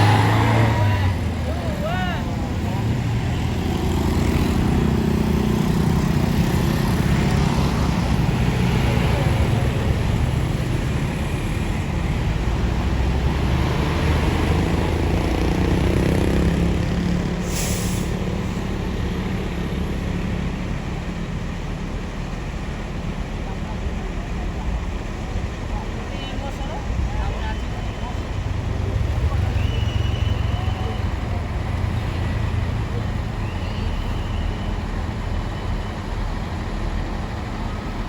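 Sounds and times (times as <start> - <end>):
diesel engine humming: 0.0 - 38.0
air hiss: 17.4 - 18.3.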